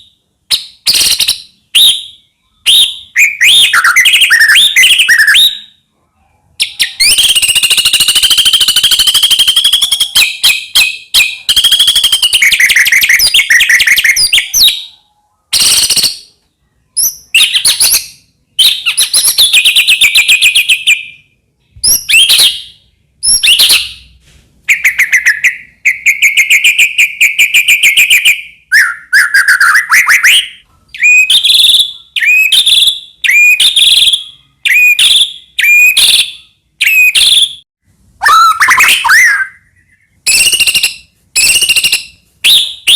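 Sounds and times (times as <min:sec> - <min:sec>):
songbird singing: 0:00.0 - 0:24.1.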